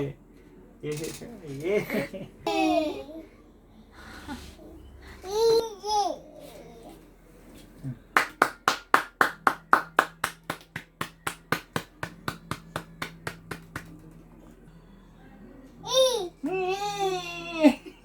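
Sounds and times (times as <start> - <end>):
hand clapping: 8.2 - 14.3.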